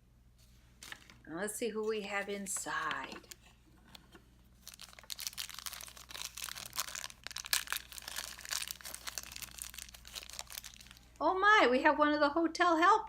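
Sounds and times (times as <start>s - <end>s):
packaging crinkling: 0.8s - 1.2s, 2.0s - 11.2s.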